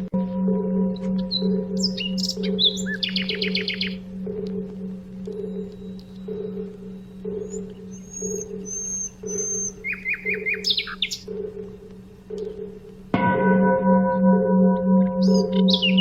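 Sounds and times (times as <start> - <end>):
large temple bell ringing: 0.0 - 7.4, 13.1 - 16.0
low steady hum: 0.0 - 16.0
small birds chirping: 0.2 - 13.2, 15.1 - 16.0.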